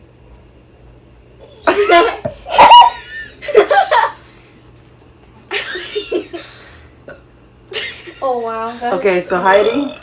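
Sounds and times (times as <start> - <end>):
people laughing and squealing: 1.7 - 3.2.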